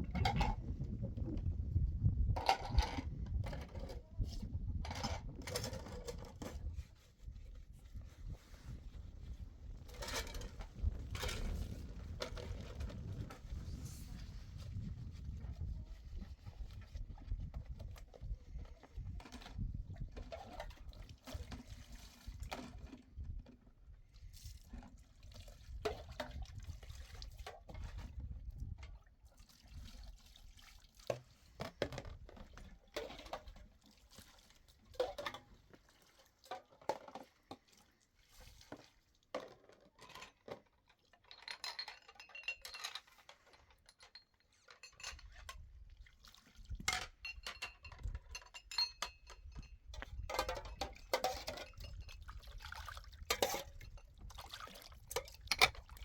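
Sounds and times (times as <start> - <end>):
dishes and pots clinking: 46.9 - 52.2.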